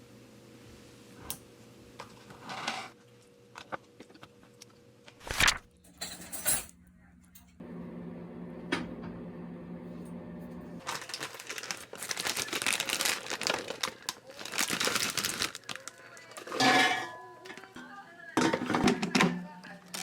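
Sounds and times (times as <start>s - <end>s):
dishes and cutlery clinking: 5.9s - 6.8s, 16.4s - 19.4s.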